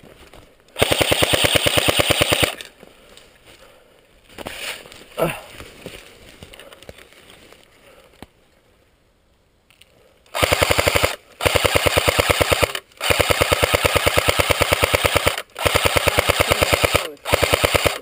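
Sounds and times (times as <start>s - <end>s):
airsoft gun firing full auto: 0.8s - 2.6s, 10.4s - 18.0s.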